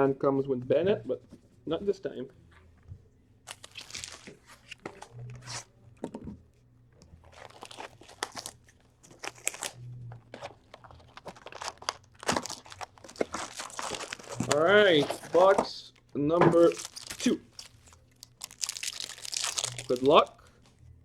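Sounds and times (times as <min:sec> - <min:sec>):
foil and cardboard crinkling: 0:03.5 - 0:05.6, 0:07.2 - 0:15.9, 0:16.5 - 0:20.7.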